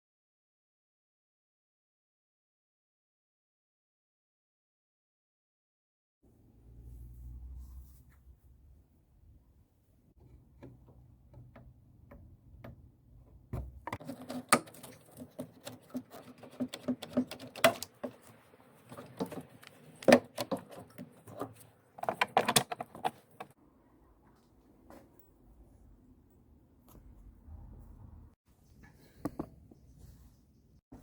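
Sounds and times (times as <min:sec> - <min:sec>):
mechanical clicks and clattering: 0:13.6 - 0:18.3.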